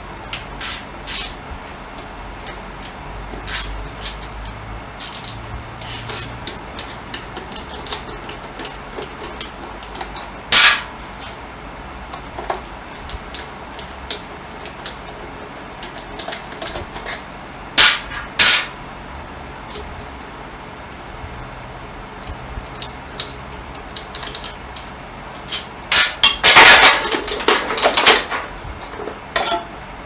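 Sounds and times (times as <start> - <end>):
metal tools clicking and knocking: 6.4 - 10.8, 12.1 - 17.2, 22.2 - 29.9
loud sharp metal bangs: 10.5 - 11.0, 17.8 - 18.8.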